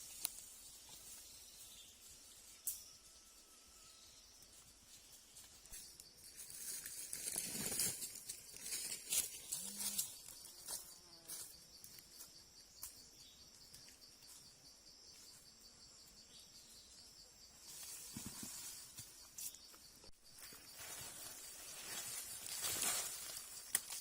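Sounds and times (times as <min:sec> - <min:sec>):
insects trilling: 0:00.0 - 0:24.0
rustling: 0:20.5 - 0:24.0.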